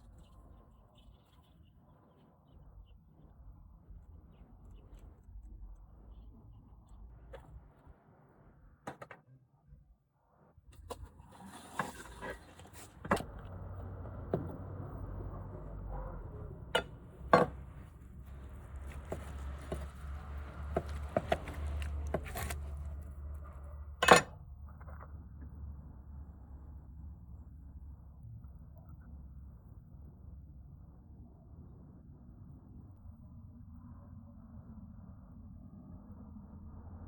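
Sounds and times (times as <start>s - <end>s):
low steady rumble: 10.8s - 37.0s.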